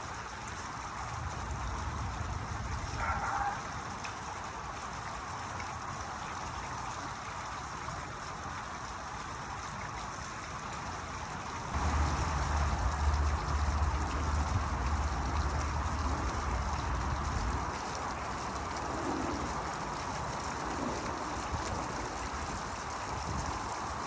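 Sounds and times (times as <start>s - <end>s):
fountain water splashing: 0.0s - 24.0s
low rumble: 11.8s - 17.7s.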